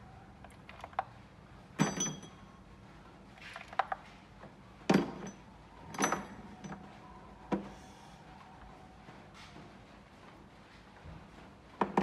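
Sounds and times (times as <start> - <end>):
metallic clinks of hand tools: 1.8 - 2.5.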